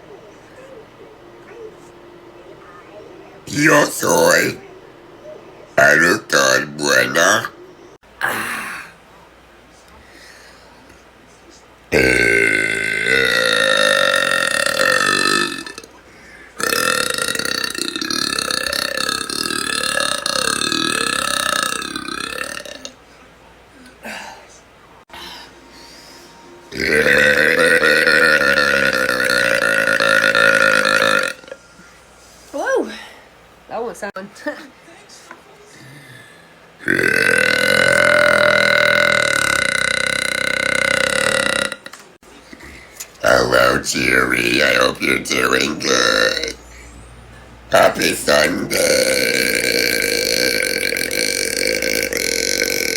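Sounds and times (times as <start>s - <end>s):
woman belching loudly: 11.9s - 15.9s, 16.6s - 23.0s, 26.7s - 31.6s, 36.8s - 41.9s, 44.6s - 46.6s, 47.8s - 52.9s.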